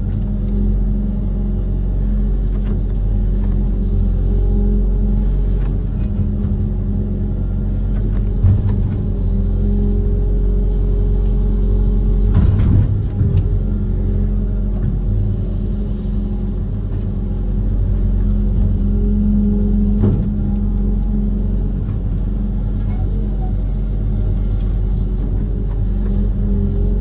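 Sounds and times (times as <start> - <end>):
excavator diesel engine running: 0.0 - 27.0
machine clunk: 12.2 - 13.6.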